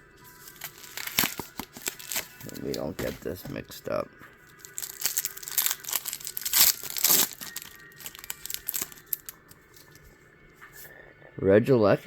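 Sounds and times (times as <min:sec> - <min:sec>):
foil wrapper tearing and crinkling: 0:00.4 - 0:03.2, 0:04.5 - 0:09.5.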